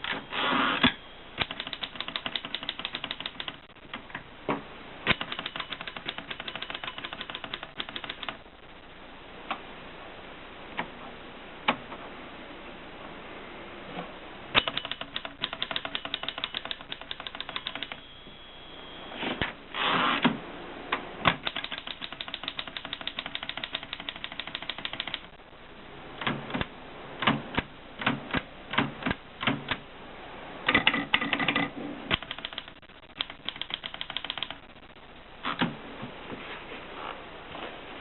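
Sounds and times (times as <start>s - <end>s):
typewriter key strikes: 5.1s - 8.4s, 14.6s - 18.0s.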